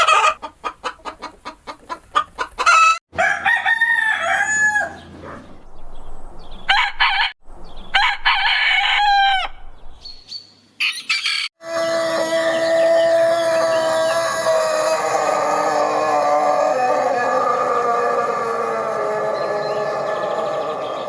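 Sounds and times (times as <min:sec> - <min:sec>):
rooster clucking: 0:00.0 - 0:05.5
rooster crowing: 0:02.7 - 0:05.0, 0:06.7 - 0:09.6, 0:10.8 - 0:21.0.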